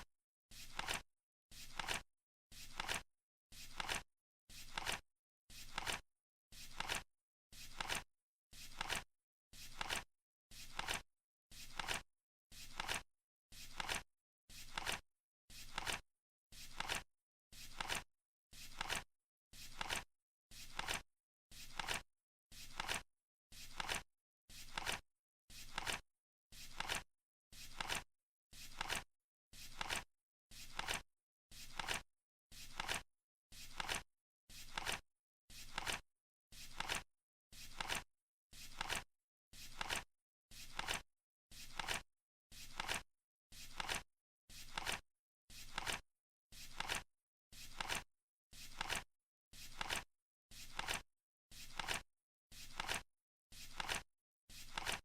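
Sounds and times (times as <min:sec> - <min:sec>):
flip-clock swish and click: 0:35.7 - 0:36.0.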